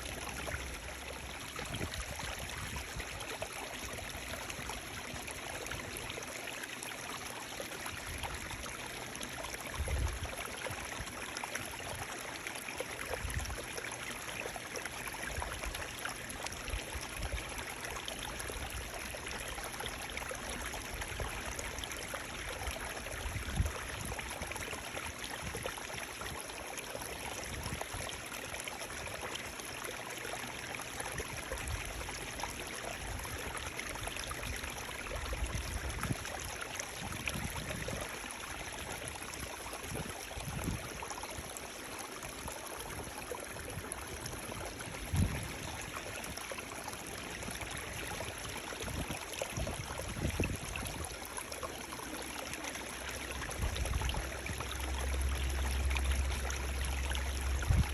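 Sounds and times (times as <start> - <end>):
running water rushing: 0.0 - 57.9.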